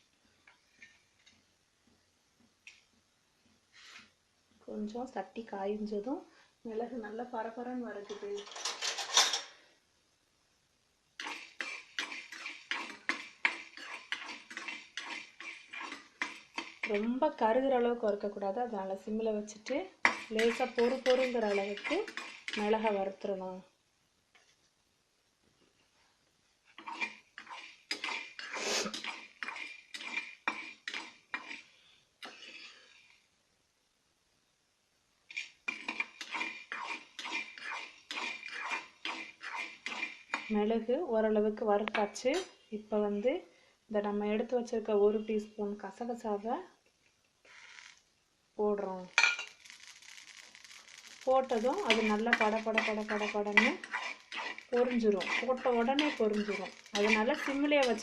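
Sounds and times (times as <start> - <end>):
spoon scraping against pan: 11.2 - 17.3, 19.6 - 23.0, 26.7 - 33.1, 35.3 - 40.5, 49.1 - 58.0.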